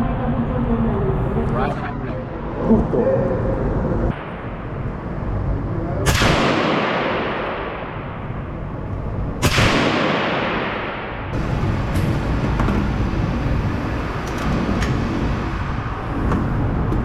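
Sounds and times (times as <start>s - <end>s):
gunshots with long echo: 4.1s - 11.5s.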